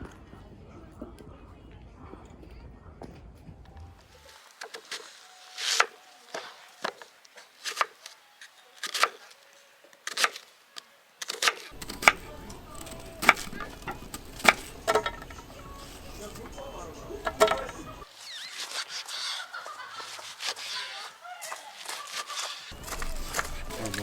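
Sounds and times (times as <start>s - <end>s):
sharp wooden knocks: 11.8s - 18.0s.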